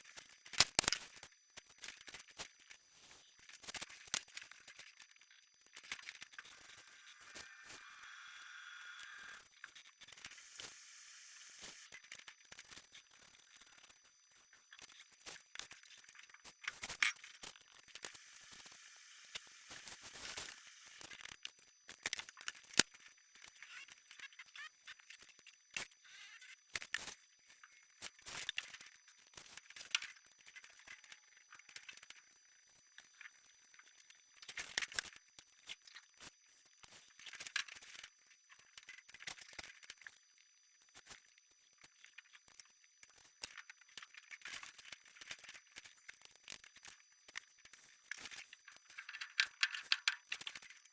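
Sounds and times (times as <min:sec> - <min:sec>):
scratching and crinkling foam board: 0:00.0 - 0:50.9.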